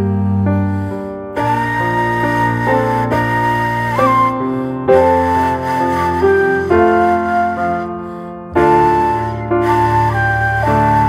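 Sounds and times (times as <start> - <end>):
gentle piano-like keyboard melody: 0.0 - 11.0.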